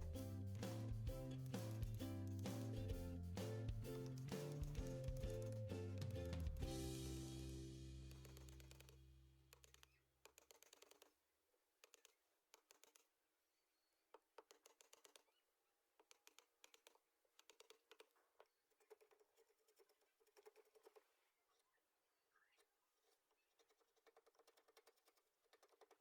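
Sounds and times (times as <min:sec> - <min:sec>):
light scratching: 0:00.0 - 0:06.7, 0:08.0 - 0:11.1.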